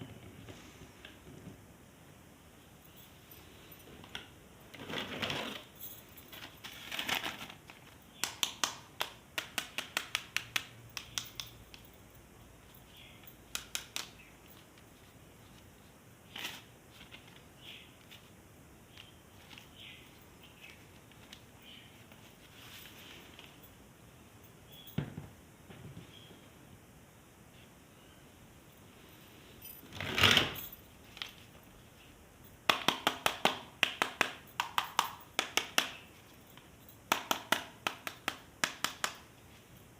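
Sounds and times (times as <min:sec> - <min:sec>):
plastic packaging rustling: 0:04.7 - 0:08.0.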